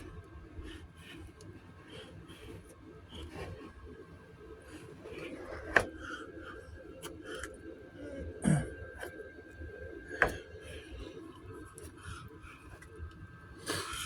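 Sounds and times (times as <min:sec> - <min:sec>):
person clearing throat: 0:08.4 - 0:08.8.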